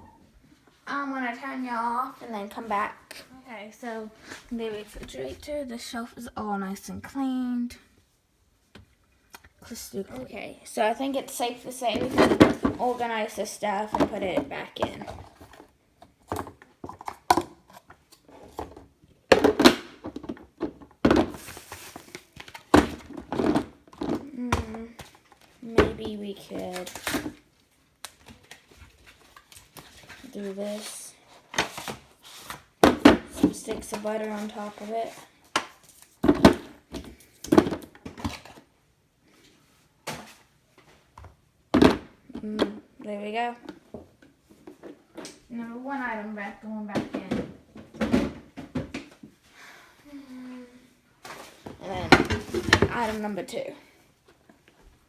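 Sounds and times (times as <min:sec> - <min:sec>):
food containers knocking on shelves: 0:19.3 - 0:21.4, 0:32.8 - 0:34.0, 0:36.2 - 0:38.4, 0:41.8 - 0:42.8, 0:46.9 - 0:49.1, 0:51.7 - 0:53.2.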